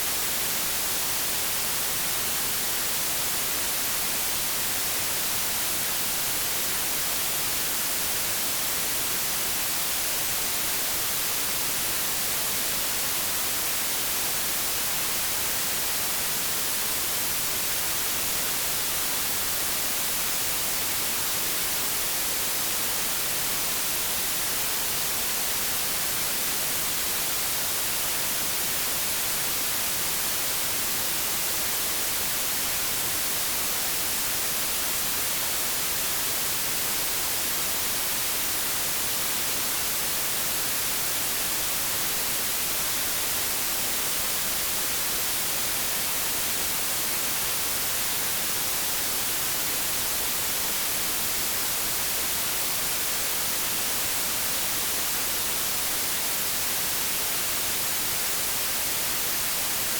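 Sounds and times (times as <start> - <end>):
white noise static hiss: 0.0 - 59.9.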